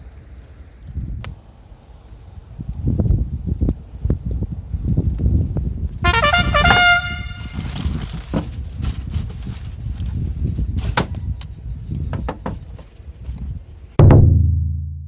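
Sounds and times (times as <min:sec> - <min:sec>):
descending trumpet-like notes: 0:06.0 - 0:07.8.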